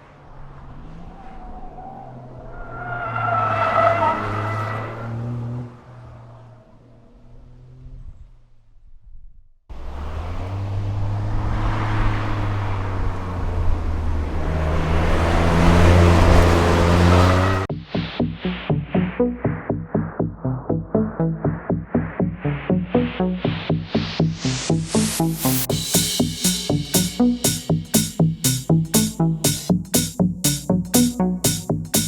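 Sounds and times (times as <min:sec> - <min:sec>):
car engine revving hard: 0:03.1 - 0:08.0, 0:09.7 - 0:17.7.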